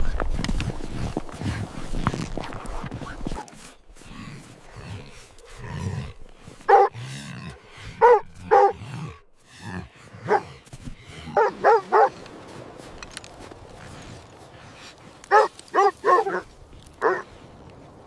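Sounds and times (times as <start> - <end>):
dog barking: 6.7 - 7.0, 8.0 - 8.8, 10.2 - 10.5, 11.3 - 12.2, 15.3 - 16.4, 17.0 - 17.2.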